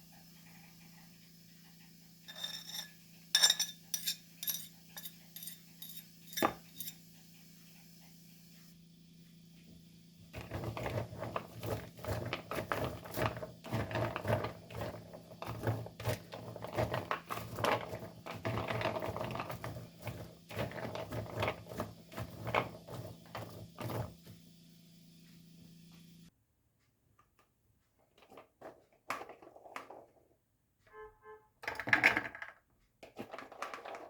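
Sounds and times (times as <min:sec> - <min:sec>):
faint steady hum: 0:00.0 - 0:11.9
clicking and knocking of food preparation: 0:09.6 - 0:24.5, 0:26.8 - 0:30.6, 0:31.6 - 0:34.0.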